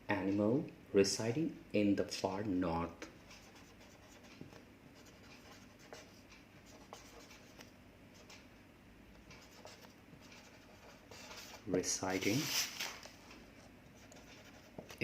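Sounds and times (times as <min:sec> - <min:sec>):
pen scratching: 0:03.3 - 0:04.4, 0:06.7 - 0:08.4, 0:09.3 - 0:11.6.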